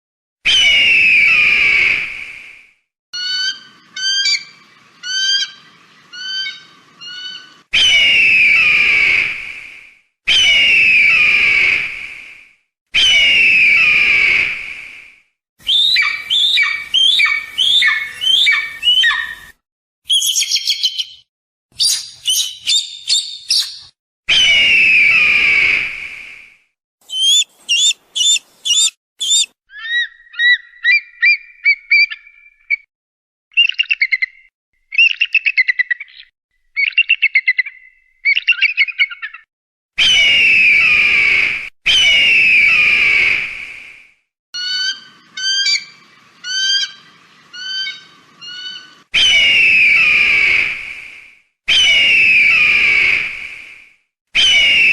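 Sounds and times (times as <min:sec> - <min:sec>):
eagle scream: 0:06.2 - 0:09.4, 0:10.3 - 0:11.9, 0:13.0 - 0:14.6, 0:15.6 - 0:19.5, 0:24.3 - 0:25.9, 0:27.0 - 0:30.6, 0:40.0 - 0:43.5, 0:47.6 - 0:50.8, 0:51.7 - 0:53.5, 0:54.4 - 0:54.9
eagle chirps and chittering: 0:15.6 - 0:19.4, 0:20.1 - 0:21.2, 0:21.8 - 0:23.9, 0:27.0 - 0:32.2, 0:44.6 - 0:49.4.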